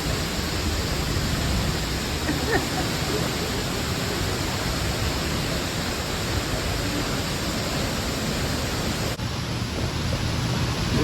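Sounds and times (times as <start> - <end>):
waterfall roaring: 0.0 - 11.0.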